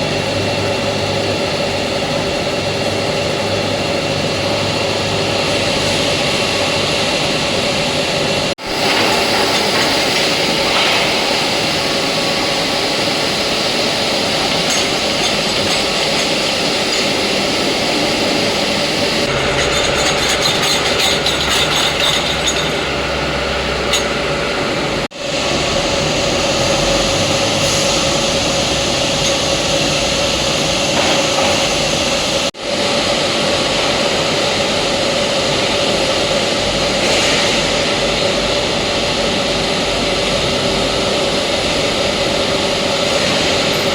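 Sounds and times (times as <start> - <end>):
machinery hum with whine: 0.0 - 43.9.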